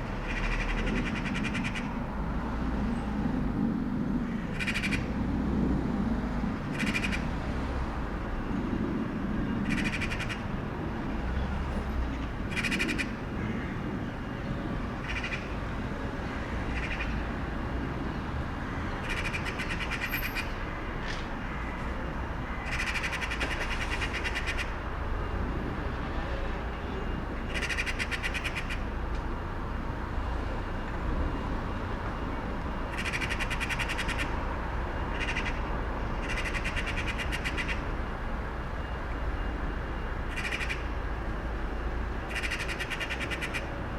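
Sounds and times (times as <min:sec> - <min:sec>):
low street rumble: 0:00.0 - 0:43.9
crows cawing harshly: 0:00.2 - 0:02.0, 0:04.2 - 0:05.1, 0:09.6 - 0:10.4, 0:15.0 - 0:15.6, 0:16.4 - 0:17.2, 0:18.6 - 0:20.6, 0:22.4 - 0:24.8, 0:27.5 - 0:28.8, 0:32.9 - 0:34.4, 0:35.1 - 0:37.8, 0:40.3 - 0:40.9, 0:42.3 - 0:43.7.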